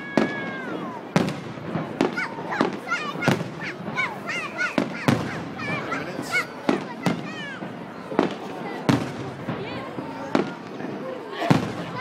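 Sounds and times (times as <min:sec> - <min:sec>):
fireworks bangs: 0:00.0 - 0:12.0
high-pitched firework chirps: 0:01.2 - 0:09.6.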